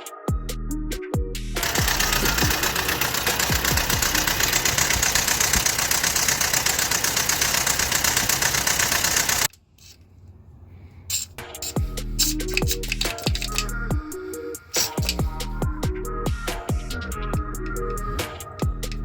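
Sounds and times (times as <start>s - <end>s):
background music: 0.0s - 5.0s, 11.4s - 19.0s
engine running steadily: 1.6s - 9.5s.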